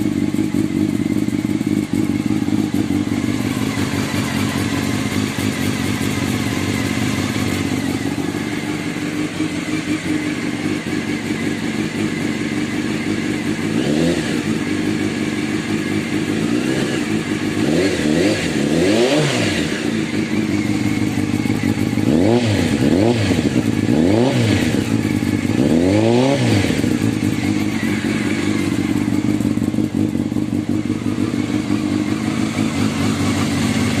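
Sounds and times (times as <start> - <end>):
motorcycle engine idling: 0.0 - 34.0.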